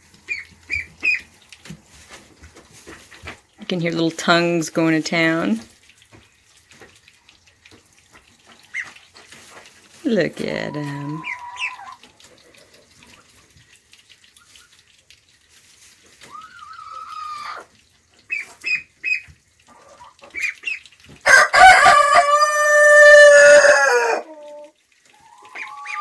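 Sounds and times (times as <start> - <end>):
rooster crowing: 21.3 - 24.3.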